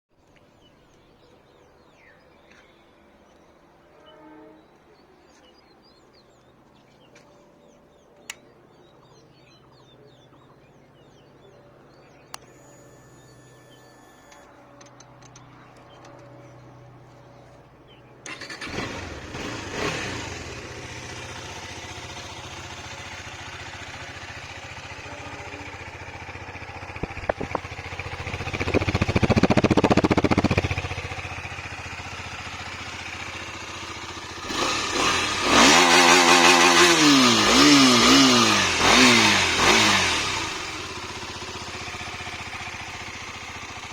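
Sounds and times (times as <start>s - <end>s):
motorcycle engine idling and revving: 10.6s - 43.9s.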